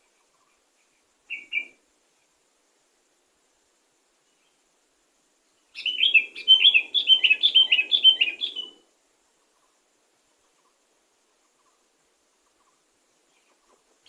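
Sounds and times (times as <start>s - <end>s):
bulbul chirping song: 1.3s - 1.8s, 5.7s - 8.8s.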